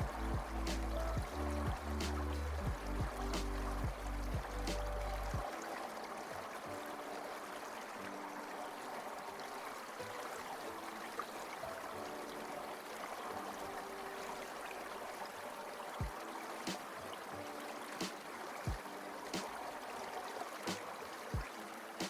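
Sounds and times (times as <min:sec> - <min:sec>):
soft held music notes: 0:00.0 - 0:09.4
stream water trickling: 0:00.0 - 0:22.0.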